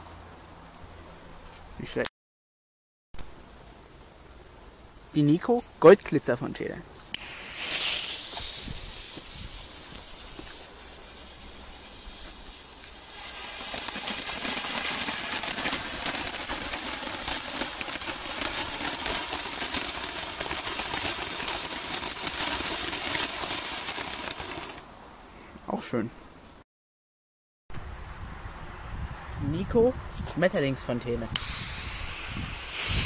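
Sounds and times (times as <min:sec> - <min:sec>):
fireworks fountain hissing and crackling: 0:07.0 - 0:25.2, 0:30.1 - 0:33.0.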